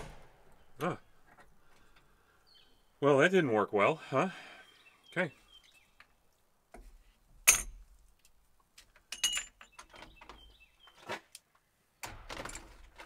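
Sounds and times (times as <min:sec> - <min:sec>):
hand tools clinking: 0:08.9 - 0:10.1.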